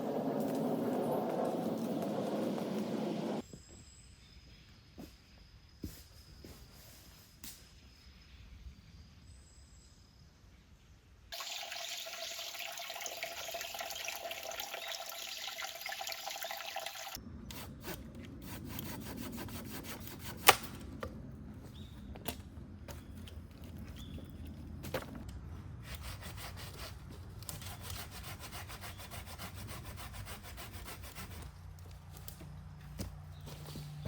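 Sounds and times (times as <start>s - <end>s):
running water: 11.4s - 17.2s.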